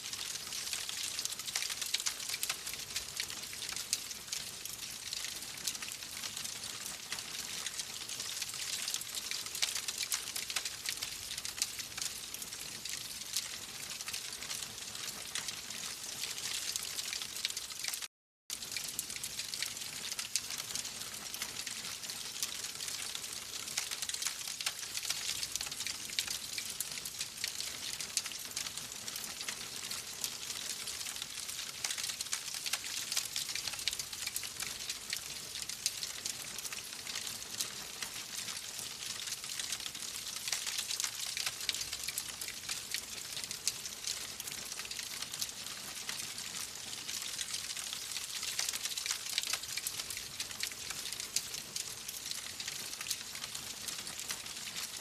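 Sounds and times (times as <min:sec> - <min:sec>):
fire crackling and popping: 0:00.1 - 0:12.5, 0:29.2 - 0:46.2.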